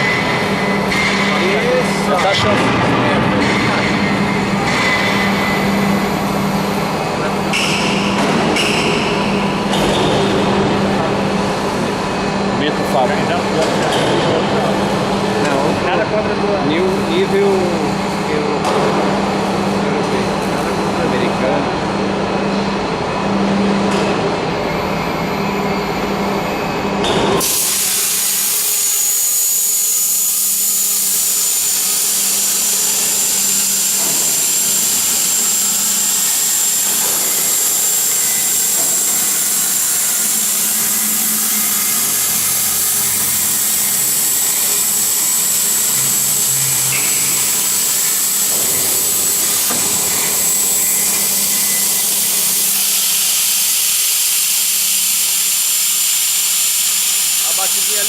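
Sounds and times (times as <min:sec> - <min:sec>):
high machine whine: 0:00.0 - 0:58.0
machine hum: 0:00.0 - 0:58.0
loud steady hiss: 0:27.4 - 0:58.0.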